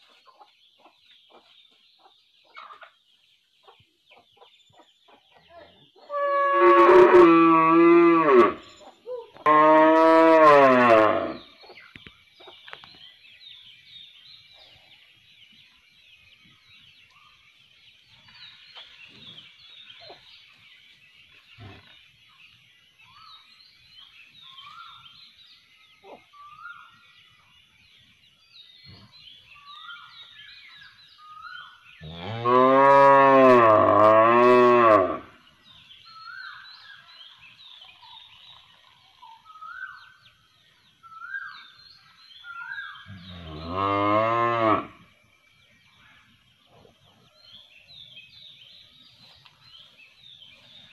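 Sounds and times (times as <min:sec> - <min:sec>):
cow mooing: 0:06.1 - 0:08.6, 0:09.4 - 0:11.4, 0:32.0 - 0:35.2, 0:43.3 - 0:44.9.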